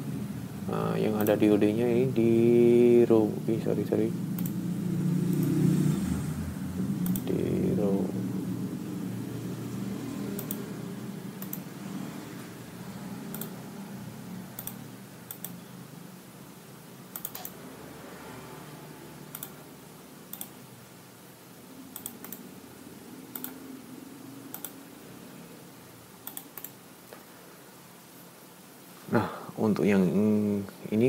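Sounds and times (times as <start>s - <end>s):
steady low hum: 0.0s - 31.0s
mouse and keyboard clicks: 10.4s - 10.6s, 11.4s - 11.7s, 13.3s - 13.6s, 17.2s - 17.6s, 19.3s - 19.6s, 23.3s - 23.6s, 24.5s - 24.8s.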